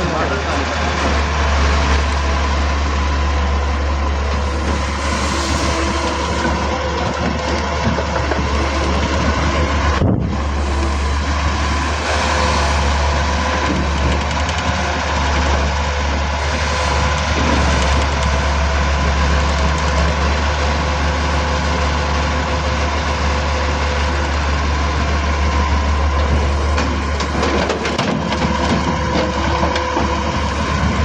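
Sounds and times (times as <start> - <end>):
excavator diesel engine running: 0.0 - 31.0
knocks and clanks: 4.3 - 15.6, 26.2 - 31.0.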